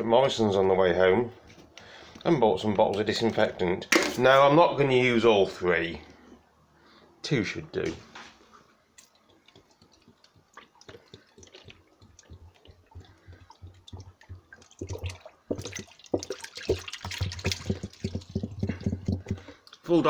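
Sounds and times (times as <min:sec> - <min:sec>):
liquid glugging from bottle: 0:09.2 - 0:19.9.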